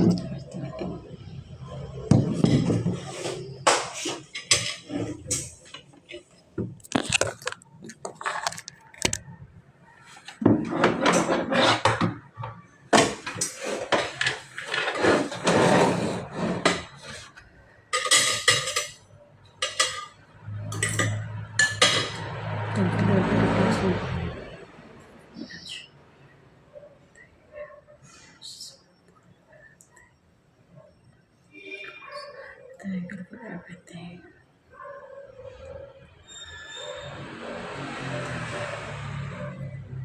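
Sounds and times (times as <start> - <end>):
cutlery clinking on a plate: 17.9 - 20.2, 20.8 - 22.2.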